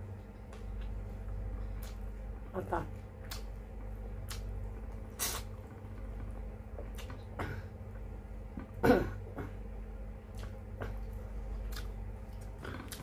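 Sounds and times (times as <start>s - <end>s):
steady low hum: 0.0s - 13.0s
mouth and eating clicks: 1.8s - 2.0s, 3.2s - 3.6s, 4.2s - 5.4s, 6.8s - 7.2s, 10.3s - 11.1s, 11.7s - 13.0s
person coughing: 8.8s - 9.6s.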